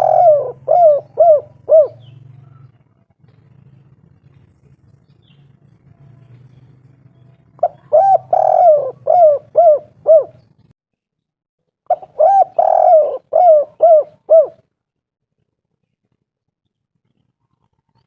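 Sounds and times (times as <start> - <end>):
dove cooing: 0.0 - 2.8, 7.4 - 10.5, 11.9 - 14.6.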